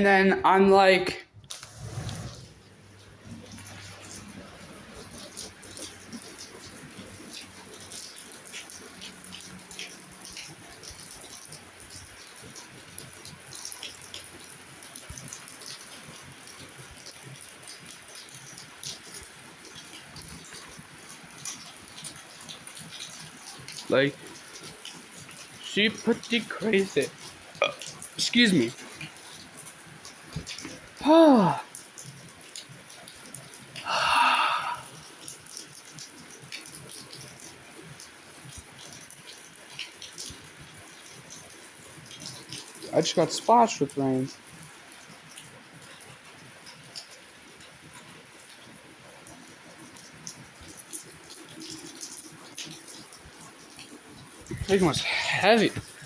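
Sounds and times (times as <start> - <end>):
heavy rain hiss: 1.4 - 11.8, 22.1 - 31.8, 33.3 - 38.4, 40.3 - 44.6, 53.1 - 56.0.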